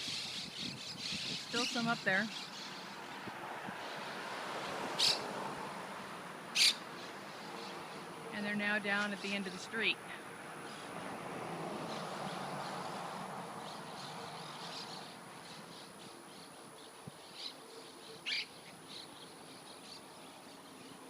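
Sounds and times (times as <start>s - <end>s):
parakeets squawking: 0.0s - 3.0s, 5.0s - 5.2s, 6.6s - 7.4s, 18.2s - 18.6s.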